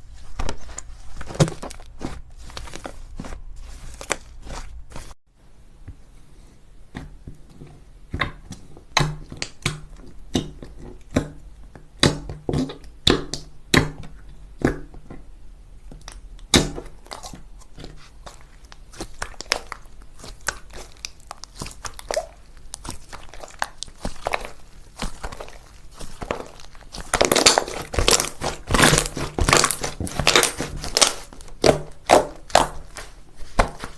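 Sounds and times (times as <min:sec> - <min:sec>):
crunchy slime crackling: 0:00.2 - 0:05.2, 0:16.0 - 0:33.9.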